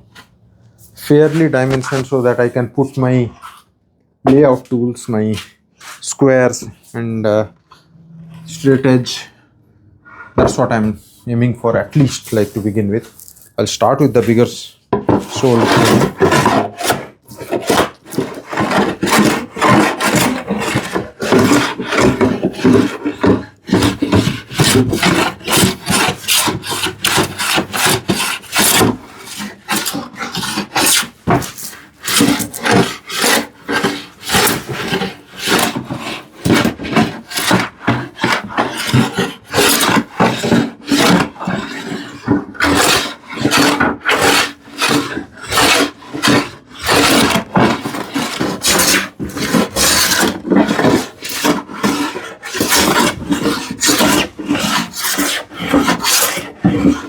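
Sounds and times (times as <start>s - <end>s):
hand plane shaving wood: 0.9s - 3.6s, 15.1s - 57.0s.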